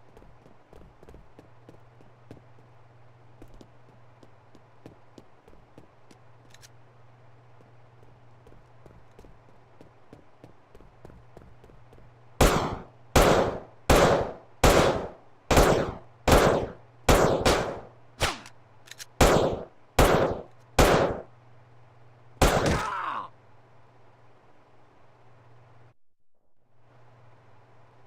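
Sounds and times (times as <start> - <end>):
loud sharp bangs: 12.4 - 18.5, 19.2 - 21.3, 22.4 - 22.9.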